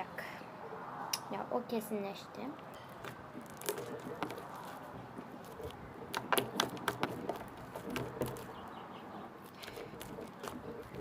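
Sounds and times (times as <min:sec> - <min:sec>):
bead slime crackling: 0:02.9 - 0:08.8, 0:09.4 - 0:11.0.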